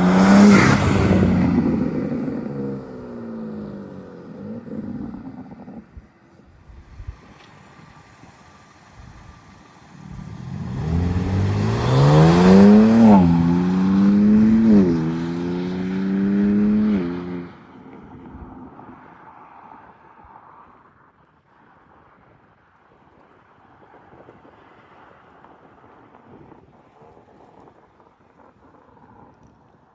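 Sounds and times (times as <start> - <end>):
car engine accelerating through gears: 0.0 - 5.9, 9.9 - 17.6.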